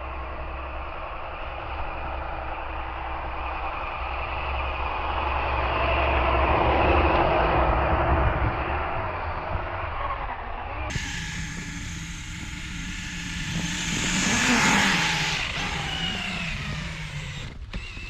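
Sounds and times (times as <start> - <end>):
electric motor straining: 10.9 - 18.0
tires churning through snow: 10.9 - 18.0.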